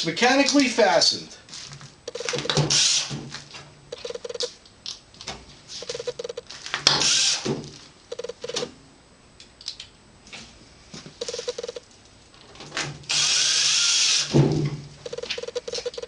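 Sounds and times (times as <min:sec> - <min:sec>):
drill whine: 0:13.1 - 0:14.3.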